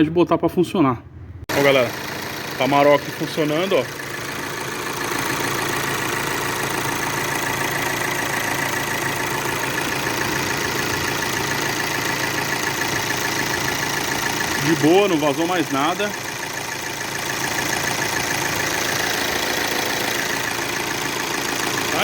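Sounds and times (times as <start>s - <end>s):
diesel engine idling: 1.5s - 22.0s.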